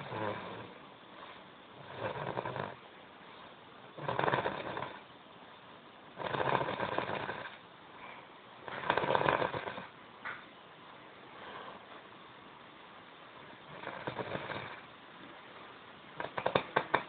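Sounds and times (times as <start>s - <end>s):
loud rattling snores: 0.0s - 0.8s, 1.8s - 2.8s, 4.0s - 5.0s, 6.2s - 7.6s, 8.7s - 9.9s, 13.7s - 14.9s, 16.2s - 17.0s
quiet breathing: 0.0s - 5.1s, 6.2s - 10.0s, 11.2s - 12.2s.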